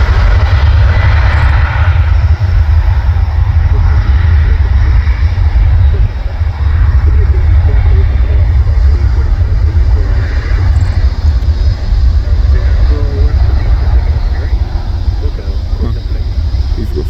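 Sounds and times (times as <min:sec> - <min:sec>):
jet engines rumbling: 0:00.0 - 0:17.0.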